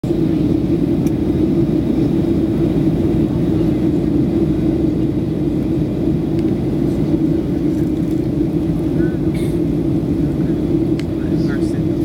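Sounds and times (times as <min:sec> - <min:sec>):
jet engines rumbling: 0:00.0 - 0:12.0.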